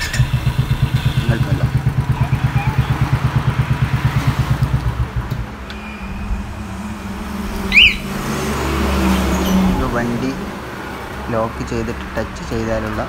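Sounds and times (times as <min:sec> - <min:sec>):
motorcycle engine idling: 0:00.0 - 0:08.4
electronic alarm chirp: 0:07.7 - 0:08.1.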